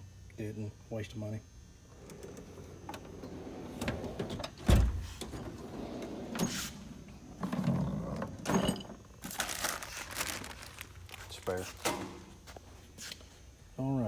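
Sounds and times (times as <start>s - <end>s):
metal drawers sliding on runners: 2.0s - 7.8s
drawer shutting with heavy thump: 2.9s - 6.8s.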